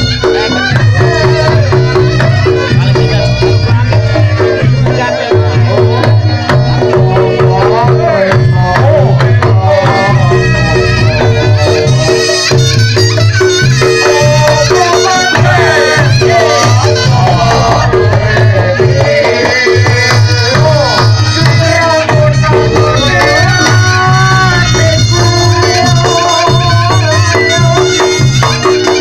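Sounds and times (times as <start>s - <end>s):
driving drum pattern: 0.0s - 29.0s
wavering reed-horn melody: 9.6s - 19.2s, 20.2s - 29.0s.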